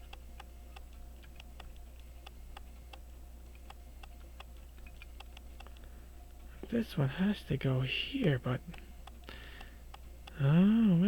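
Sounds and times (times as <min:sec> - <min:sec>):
faint low hum: 0:00.0 - 0:11.0
clock ticking: 0:08.2 - 0:10.6.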